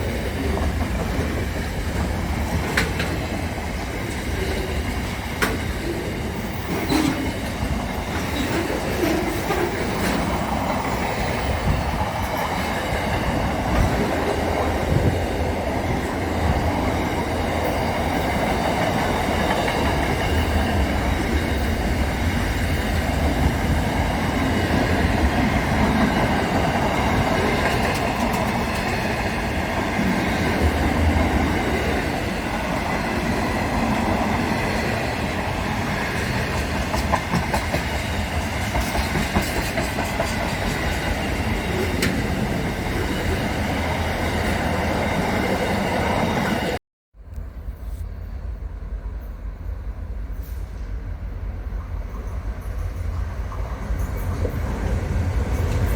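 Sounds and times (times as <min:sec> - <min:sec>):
train rumbling on rails: 0:00.0 - 0:55.9.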